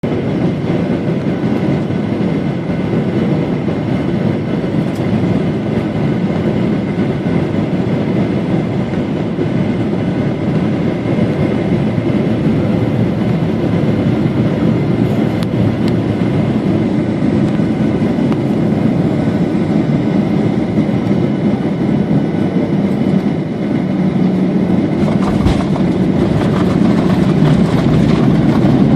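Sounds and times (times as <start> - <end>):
jet engine and airflow drone: 0.0 - 28.9
low thump: 25.0 - 28.4.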